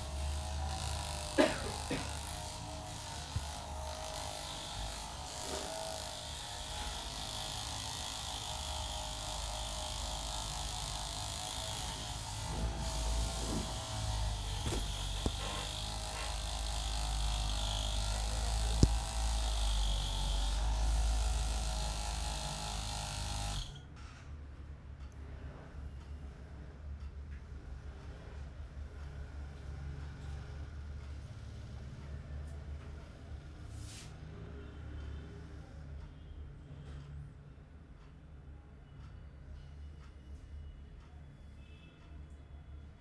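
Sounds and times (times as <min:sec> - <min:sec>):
small electric motor buzzing: 0:00.0 - 0:23.8.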